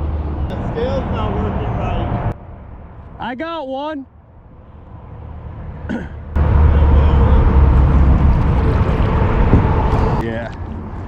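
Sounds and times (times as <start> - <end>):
wind buffeting microphone: 6.3 - 11.0.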